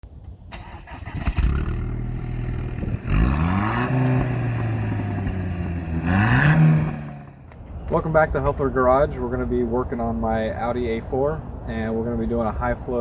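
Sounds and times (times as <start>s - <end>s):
car engine revving: 0.6s - 7.5s.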